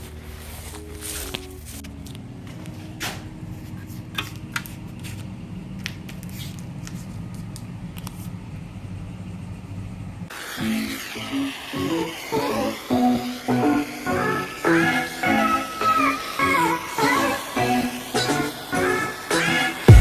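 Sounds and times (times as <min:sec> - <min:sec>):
music: 0:00.0 - 0:05.2, 0:10.5 - 0:20.0.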